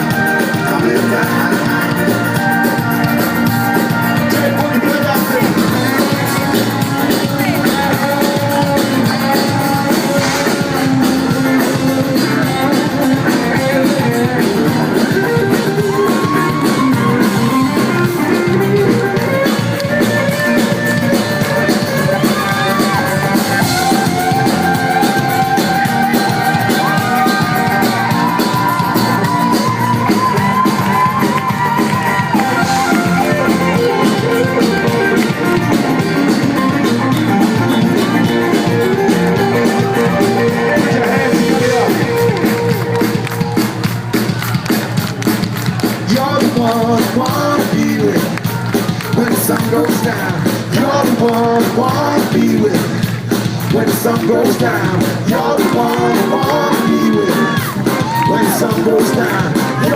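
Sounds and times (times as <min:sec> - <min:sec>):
live band with guitar and drums: 0:00.0 - 0:59.9.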